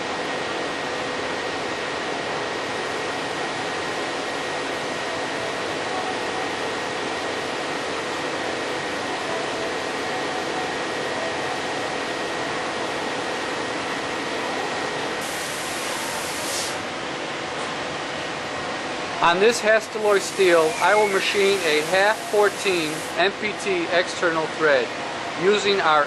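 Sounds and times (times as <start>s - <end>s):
milling machine whirring: 17.7s - 26.0s
high hiss: 20.1s - 23.2s.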